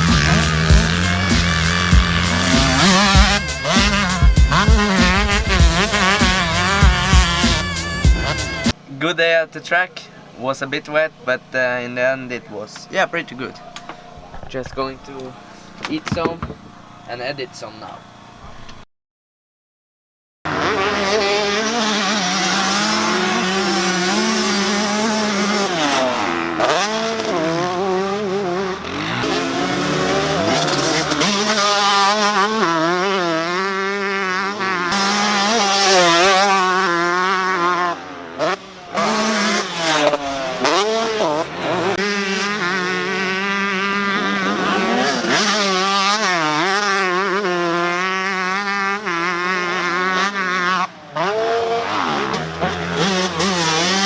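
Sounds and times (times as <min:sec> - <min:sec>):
dirt bike engine revving: 0:00.0 - 0:08.8, 0:20.5 - 0:54.0.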